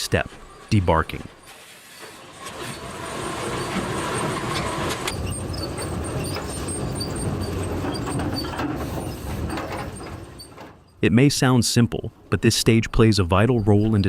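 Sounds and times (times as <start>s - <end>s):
heavy machinery rumbling: 0.0s - 14.0s
clattering knocks and clanks: 0.2s - 11.0s.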